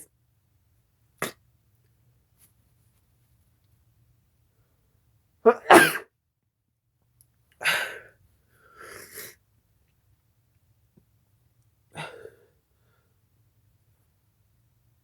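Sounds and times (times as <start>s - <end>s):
person sneezing: 5.5s - 6.0s.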